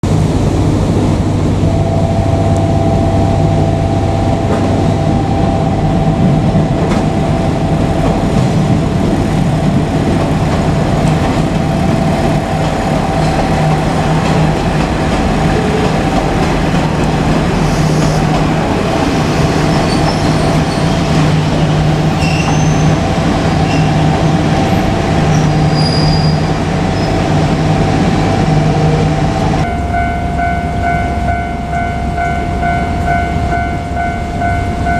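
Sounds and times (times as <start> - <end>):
constant whine: 0.0 - 17.5, 26.3 - 34.9
diesel railcar engine drone: 0.0 - 34.9.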